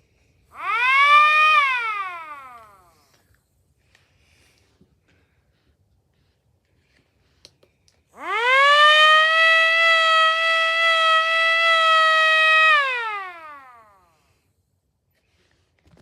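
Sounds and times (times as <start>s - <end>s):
model air-raid siren: 0.5s - 3.3s, 8.2s - 14.5s.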